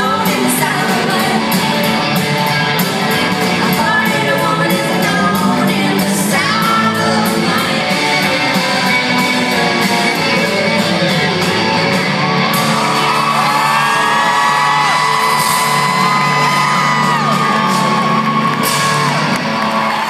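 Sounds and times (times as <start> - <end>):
country band playing: 0.0 - 20.0
women singing harmonies: 3.8 - 8.3
audience whooping: 11.7 - 20.0.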